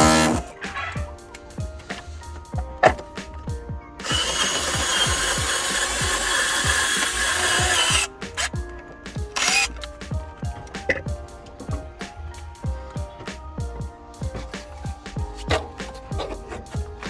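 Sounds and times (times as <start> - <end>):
power tool running: 0.0 - 0.6, 4.0 - 9.9
background music with steady beat: 0.0 - 17.0.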